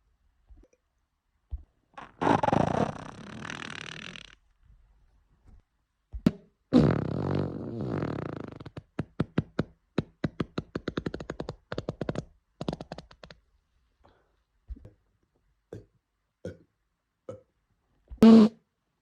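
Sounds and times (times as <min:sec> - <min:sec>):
fart sounds: 0:02.0 - 0:04.4, 0:06.7 - 0:09.1, 0:18.2 - 0:18.6.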